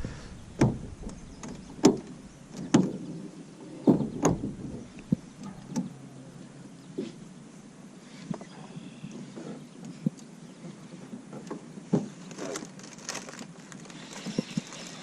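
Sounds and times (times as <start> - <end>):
knocks and clunks in boat: 0.0 - 6.0, 8.4 - 12.2.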